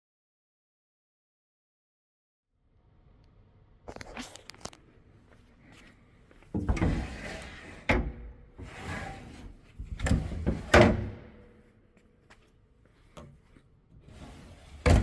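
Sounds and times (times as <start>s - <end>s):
sliding door on its track: 6.6s - 11.4s, 14.0s - 15.0s.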